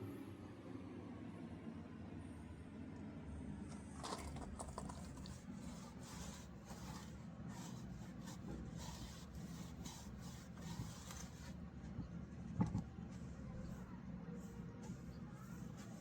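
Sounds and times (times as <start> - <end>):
hand rubbing on wood: 4.7 - 11.6.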